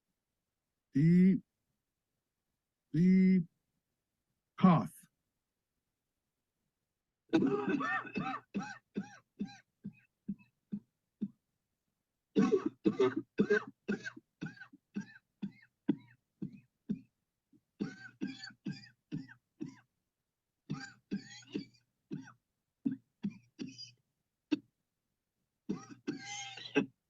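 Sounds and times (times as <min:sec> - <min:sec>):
person coughing: 0:07.3 - 0:11.4, 0:12.4 - 0:17.1, 0:17.8 - 0:19.9, 0:20.7 - 0:24.7, 0:25.7 - 0:27.0.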